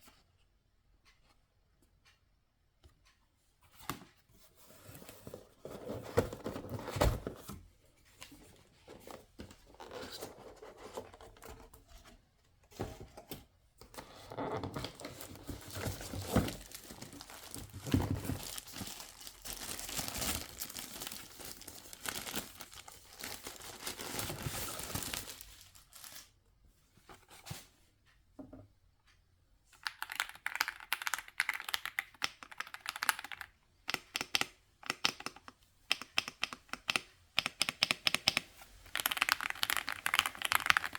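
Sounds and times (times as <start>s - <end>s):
wrapping crinkling: 14.9s - 26.3s, 38.9s - 40.9s
packaging being torn: 18.4s - 26.1s
mechanical keyboard key clicks: 29.8s - 40.9s.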